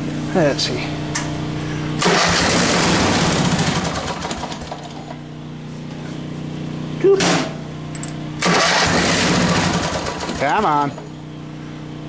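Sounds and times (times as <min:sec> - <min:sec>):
engine running steadily: 0:00.0 - 0:12.0
engine starter cranking: 0:02.0 - 0:05.1, 0:08.4 - 0:10.9.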